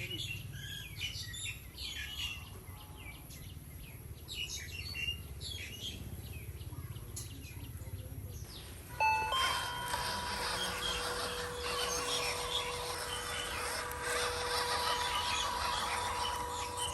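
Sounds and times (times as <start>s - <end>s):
birds chirping: 0.0s - 16.9s
steady low hum: 8.5s - 16.9s.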